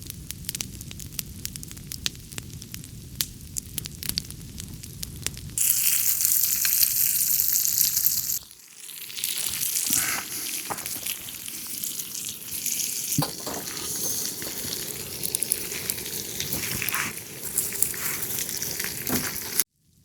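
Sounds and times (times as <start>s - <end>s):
pops and crackles: 0.0s - 19.6s
food sizzling in a pan: 5.6s - 19.7s.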